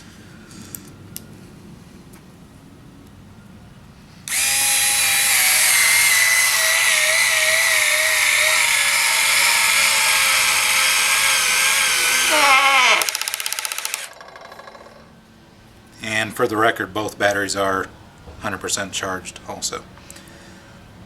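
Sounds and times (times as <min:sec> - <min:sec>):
cordless screwdriver motor whining: 0:04.3 - 0:14.1.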